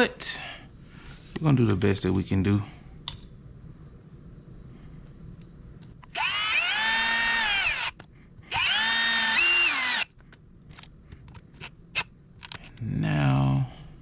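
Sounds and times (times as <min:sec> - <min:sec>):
power drill-driver running: 0:06.1 - 0:10.1.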